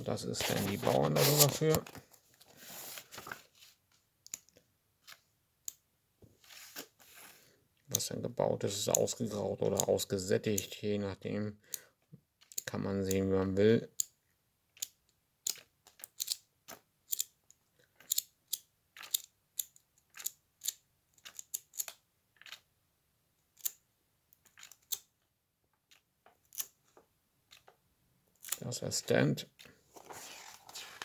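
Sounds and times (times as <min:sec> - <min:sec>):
pages flicking and rustling: 0:00.4 - 0:03.9, 0:06.4 - 0:07.5, 0:29.9 - 0:31.0.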